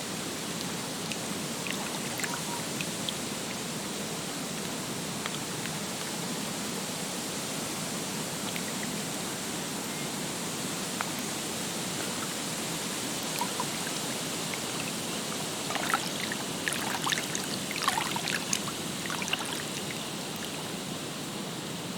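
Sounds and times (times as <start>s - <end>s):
lake water washing: 0.0s - 21.1s
small water splashes: 0.4s - 3.8s, 8.4s - 9.2s, 11.1s - 20.7s.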